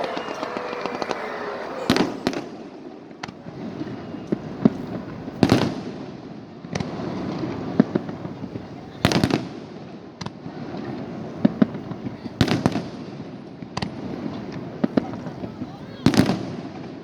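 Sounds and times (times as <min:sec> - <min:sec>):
fireworks bursting: 0:00.0 - 0:05.9.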